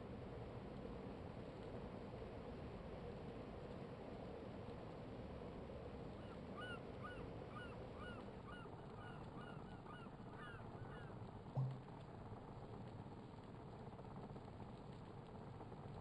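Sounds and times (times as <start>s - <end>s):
low thump: 11.6s - 11.8s.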